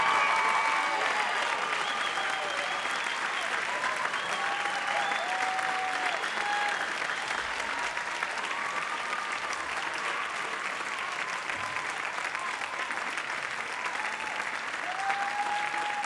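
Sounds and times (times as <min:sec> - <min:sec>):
audience applauding: 0:00.0 - 0:16.0
whistles: 0:01.4 - 0:07.6.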